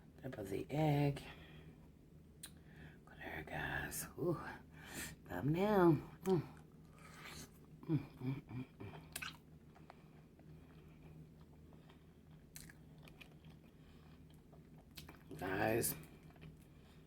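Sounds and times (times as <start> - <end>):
person humming: 7.8 - 9.0
chewing boiled egg: 8.6 - 15.4, 16.0 - 17.0.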